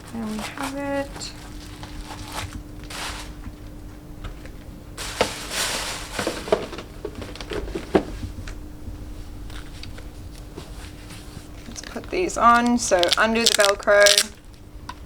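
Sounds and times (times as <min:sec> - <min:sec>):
faint steady hum: 0:00.0 - 0:15.0
packaging rustling: 0:00.6 - 0:03.6, 0:05.0 - 0:08.2, 0:13.0 - 0:14.3.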